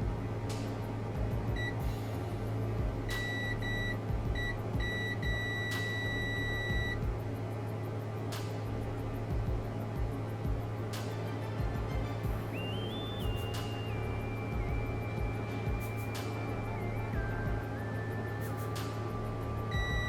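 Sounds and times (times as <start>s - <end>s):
steady low hum: 0.0s - 20.0s
multimeter continuity beeps: 1.6s - 2.0s, 3.1s - 7.1s, 12.5s - 20.0s.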